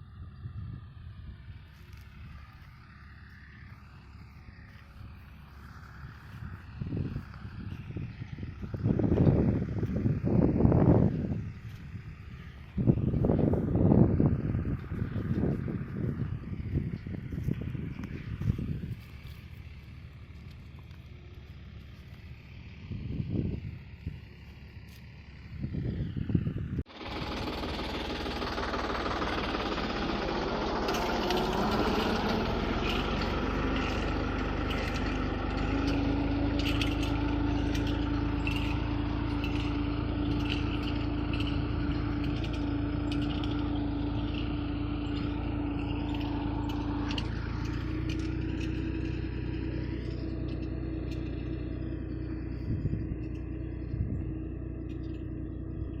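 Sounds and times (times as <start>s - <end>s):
tractor engine running: 0.0s - 56.0s
rattling clicks: 26.9s - 56.0s.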